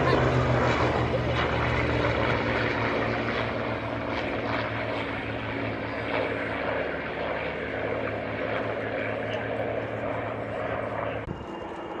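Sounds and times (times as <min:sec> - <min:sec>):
propeller aircraft engine drone: 0:00.0 - 0:12.0.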